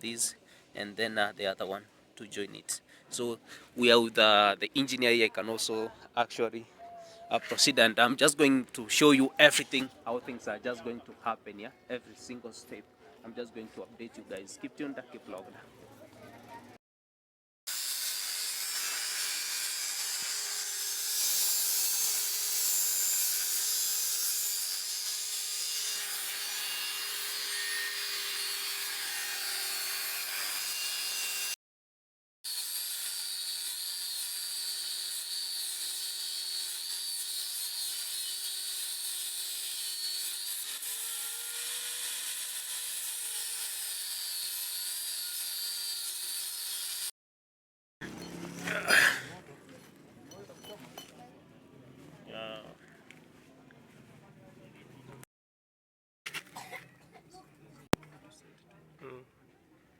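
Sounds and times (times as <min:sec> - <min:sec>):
power tool cutting metal: 0:17.7 - 0:31.6, 0:32.5 - 0:47.1.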